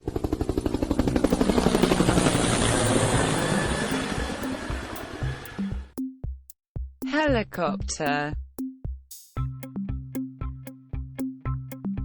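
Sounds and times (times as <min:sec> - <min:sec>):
helicopter rotor noise: 0:00.0 - 0:05.9
music with low bass: 0:05.2 - 0:12.0.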